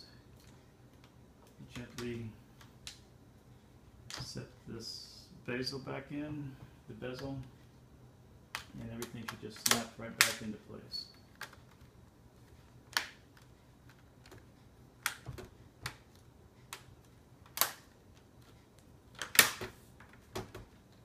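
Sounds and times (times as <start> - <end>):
plastic clips snapping: 8.5 - 10.4, 16.7 - 17.9, 19.2 - 19.7.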